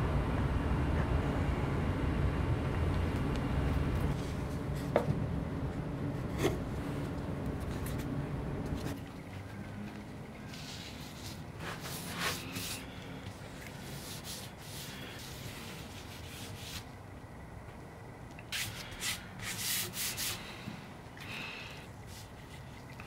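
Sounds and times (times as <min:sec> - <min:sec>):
scratchy caulk strokes: 0:10.5 - 0:16.9, 0:18.5 - 0:20.5.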